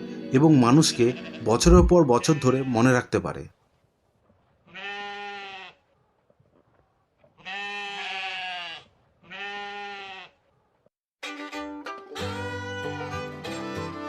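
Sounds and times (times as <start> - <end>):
sheep bleating: 0.9 - 2.9, 4.7 - 5.8, 7.4 - 10.4.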